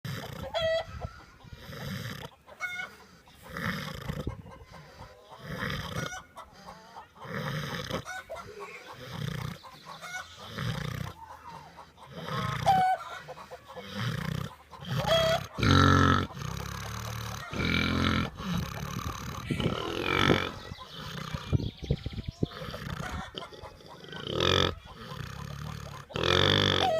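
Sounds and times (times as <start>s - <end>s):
chickens clucking: 0.1s - 26.9s
loud snoring: 1.6s - 2.3s, 3.5s - 4.3s, 5.4s - 6.1s, 7.2s - 8.0s, 10.4s - 11.2s, 12.1s - 12.8s, 13.8s - 21.6s, 22.5s - 26.9s.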